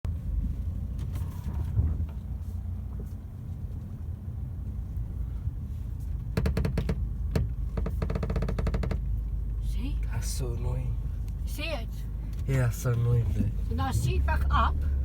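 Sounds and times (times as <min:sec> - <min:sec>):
low rumble of car on road: 0:00.0 - 0:15.0
car seat creaking: 0:06.2 - 0:09.1.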